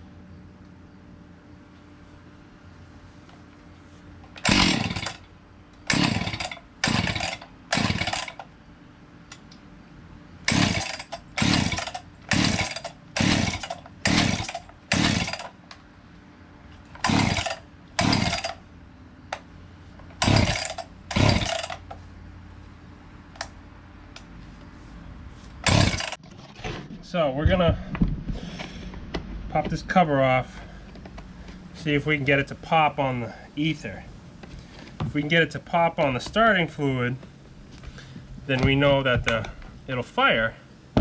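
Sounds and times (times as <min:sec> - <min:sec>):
chainsaw recoil starter pulls: 0:04.3 - 0:08.5, 0:10.5 - 0:15.6, 0:16.9 - 0:18.6, 0:20.1 - 0:22.0, 0:25.6 - 0:26.2.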